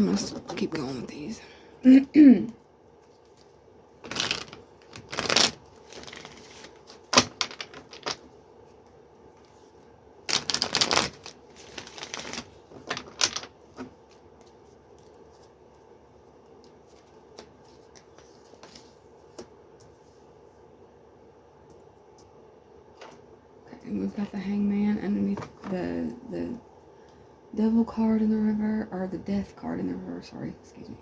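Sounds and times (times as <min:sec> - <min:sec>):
cards shuffling: 0:03.0 - 0:08.3, 0:10.3 - 0:15.6.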